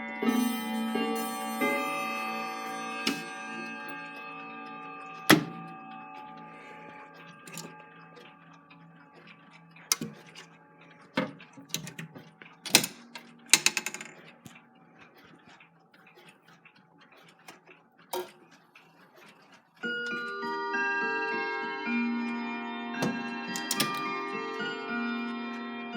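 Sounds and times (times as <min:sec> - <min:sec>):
clock chiming: 0:00.0 - 0:15.6, 0:18.2 - 0:25.9
mechanical clicks and knocks: 0:05.1 - 0:05.9, 0:07.1 - 0:14.6, 0:17.2 - 0:19.4, 0:23.0 - 0:24.1.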